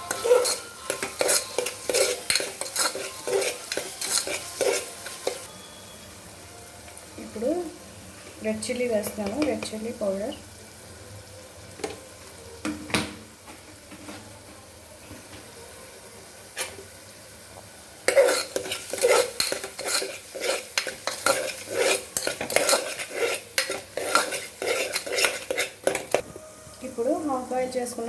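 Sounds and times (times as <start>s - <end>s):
metal spoon scraping and clinking pot: 0.0s - 5.5s, 18.1s - 26.2s
food sizzling: 0.0s - 28.0s.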